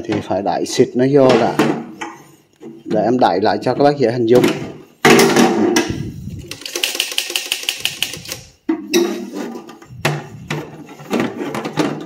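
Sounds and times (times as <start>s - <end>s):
typewriter mechanism clicking: 6.4s - 8.5s.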